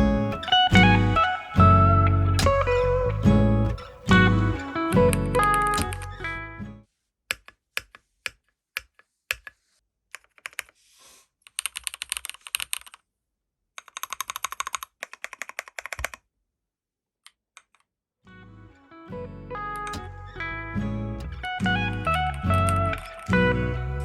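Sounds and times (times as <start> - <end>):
mechanical keyboard typing: 10.2 - 10.7, 11.5 - 13.0, 13.8 - 16.2.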